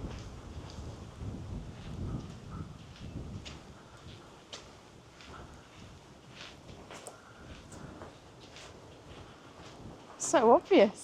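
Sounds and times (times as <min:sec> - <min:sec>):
footsteps walking: 0:00.0 - 0:11.0
wind on microphone: 0:00.0 - 0:11.0.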